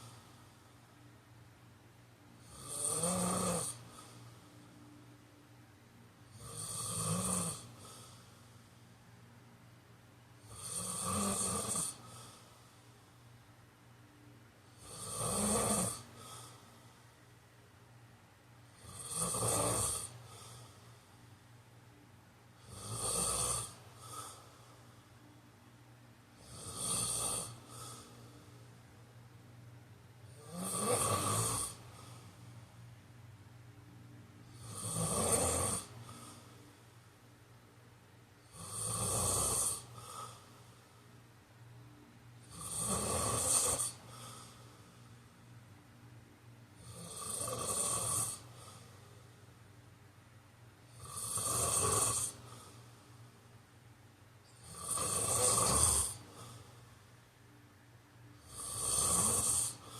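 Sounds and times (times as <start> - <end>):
faint low hum: 0.0 - 59.9
man snoring: 2.4 - 4.3, 6.3 - 8.3, 10.4 - 12.6, 14.7 - 16.7, 18.7 - 20.8, 22.6 - 24.5, 26.4 - 28.3, 30.3 - 32.3, 34.4 - 36.6, 38.4 - 40.7, 42.4 - 45.0, 46.8 - 49.0, 50.9 - 53.0, 54.5 - 56.8, 58.4 - 59.9.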